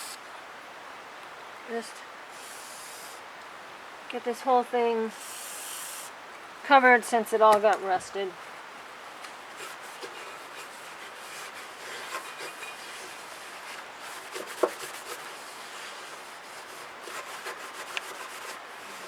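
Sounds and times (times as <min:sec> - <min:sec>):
hand scrubbing rusted metal: 0:05.1 - 0:06.1, 0:09.4 - 0:19.0.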